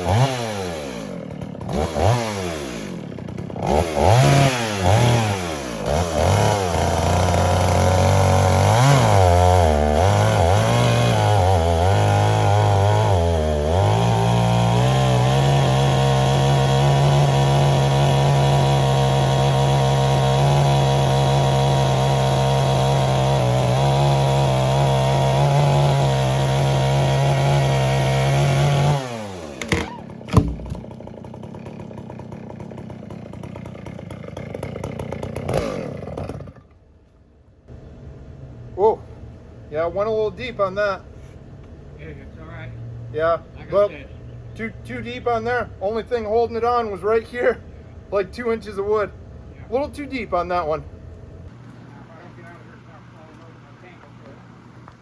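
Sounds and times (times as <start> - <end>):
chainsaw cutting limbs: 0.0 - 36.8.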